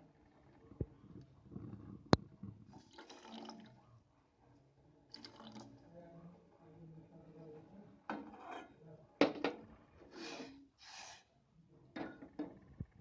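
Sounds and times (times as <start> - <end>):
kitchen utensils scraping: 8.1 - 8.8.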